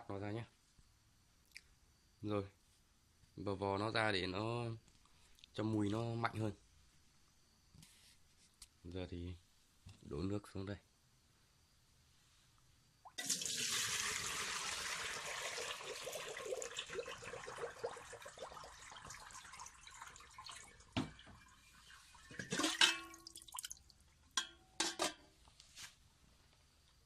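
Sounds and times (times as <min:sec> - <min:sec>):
water pouring into a pot: 0:13.1 - 0:24.0.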